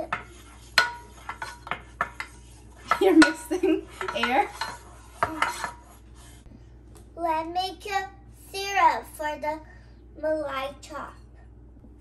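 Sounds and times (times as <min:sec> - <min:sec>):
dishes and utensils clinking: 0:00.0 - 0:05.9.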